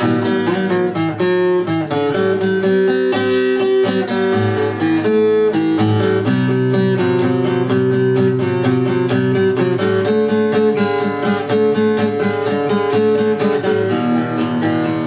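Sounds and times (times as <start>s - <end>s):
acoustic guitar strumming: 0.0s - 15.0s.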